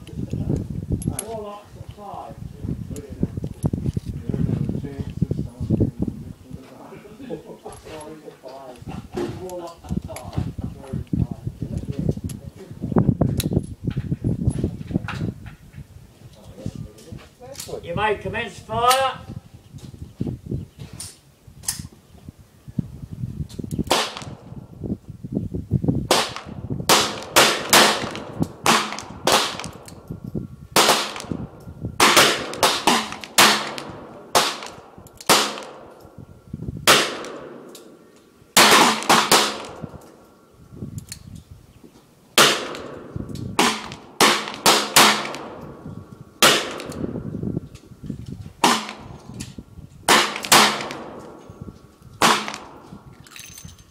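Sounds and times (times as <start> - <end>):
handgun shots echoing: 23.9 - 24.5, 26.1 - 30.1, 30.8 - 36.1, 36.9 - 38.0, 38.6 - 40.2, 42.4 - 45.8, 46.4 - 47.2, 48.6 - 49.2, 50.1 - 51.4, 52.2 - 52.8.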